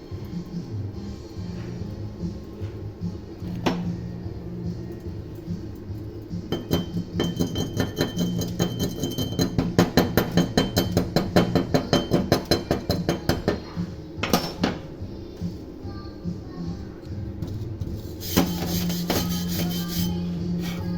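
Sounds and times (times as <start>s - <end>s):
background music: 0.0s - 20.9s
metal tapping on metal: 6.5s - 14.8s.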